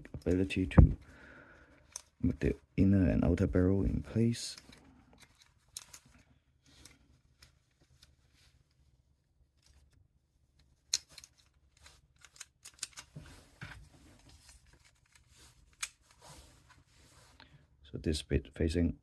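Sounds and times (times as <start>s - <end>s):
pistol parts clicking and tapping: 1.8s - 2.2s, 4.6s - 6.2s, 10.8s - 11.6s, 12.2s - 13.1s.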